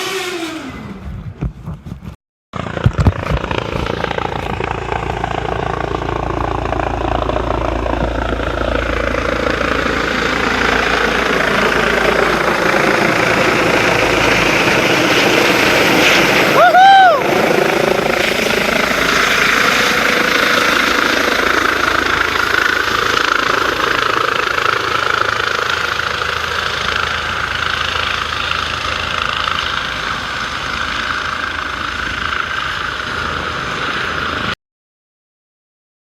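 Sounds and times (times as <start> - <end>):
engine running: 0.0 - 34.6.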